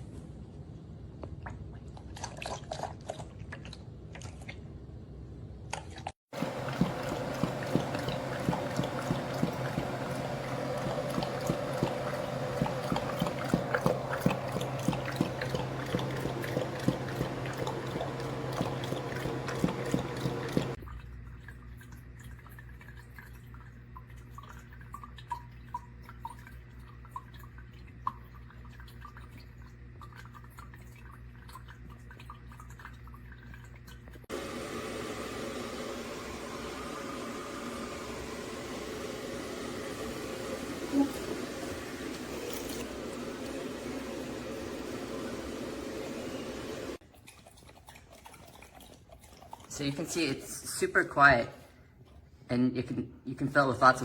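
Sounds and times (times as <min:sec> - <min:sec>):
low steady hum: 0:02.9 - 0:47.0
water trickling and dripping: 0:06.4 - 0:34.3.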